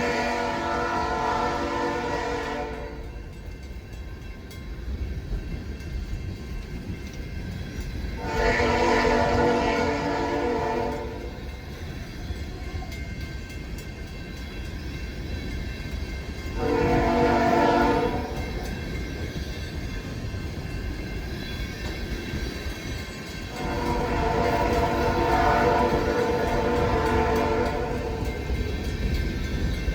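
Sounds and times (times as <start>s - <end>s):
locomotive horn: 0.0s - 3.2s, 8.2s - 11.4s, 16.6s - 18.7s, 23.5s - 28.6s
train cars rolling rumble: 0.0s - 29.9s.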